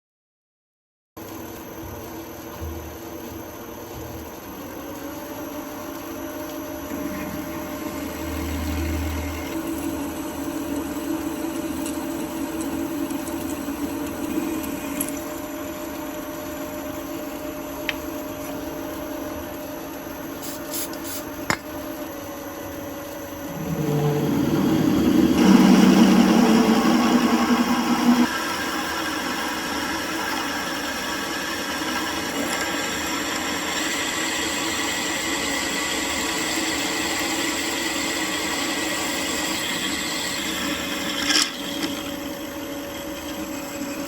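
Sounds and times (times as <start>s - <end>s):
machine tool motor humming: 23.0s - 37.8s.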